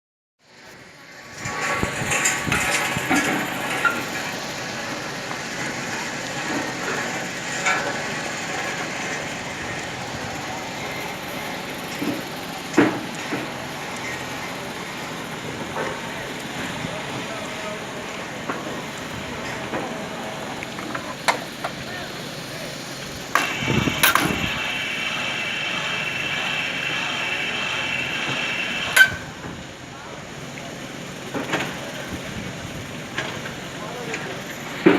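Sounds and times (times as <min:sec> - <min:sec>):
crane machinery running: 0:00.4 - 0:34.9.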